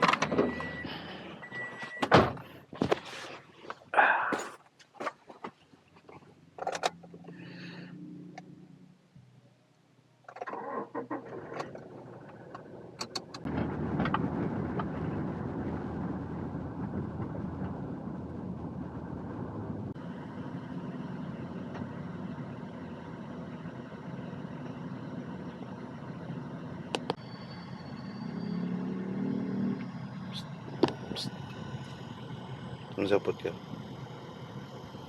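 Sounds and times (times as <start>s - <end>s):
vehicle engine starting and running: 0.0s - 3.1s, 6.5s - 9.2s, 10.2s - 35.0s.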